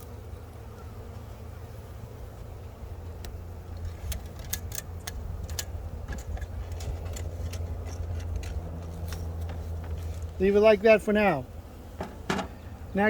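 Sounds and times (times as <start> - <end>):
wooden frames clicking and knocking: 3.8 - 10.4, 12.0 - 12.6.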